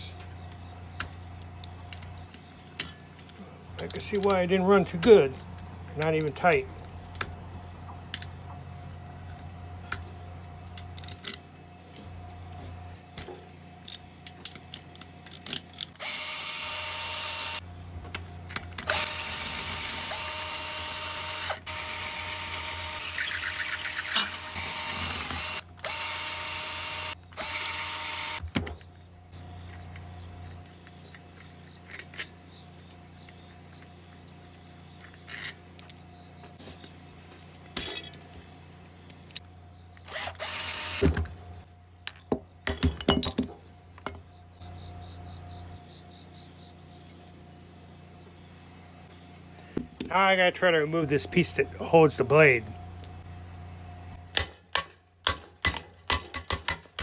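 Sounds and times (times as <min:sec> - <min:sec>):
power drill running: 0:16.0 - 0:17.6, 0:18.9 - 0:28.4, 0:40.1 - 0:41.1.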